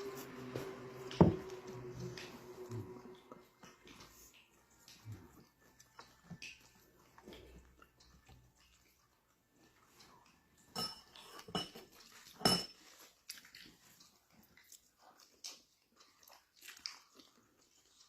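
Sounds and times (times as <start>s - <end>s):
eating noises: 0.0s - 18.0s
cutlery clinking against a dish: 10.7s - 12.9s.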